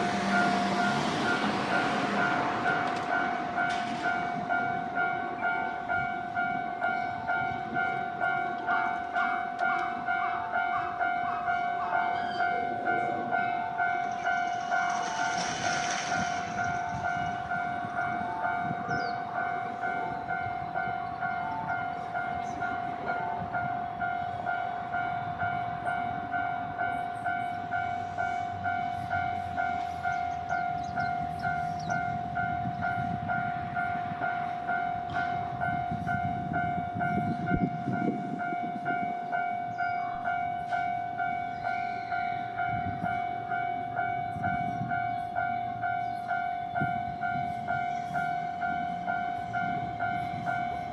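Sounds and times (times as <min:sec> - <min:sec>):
level-crossing warning bell: 0:00.0 - 0:50.9.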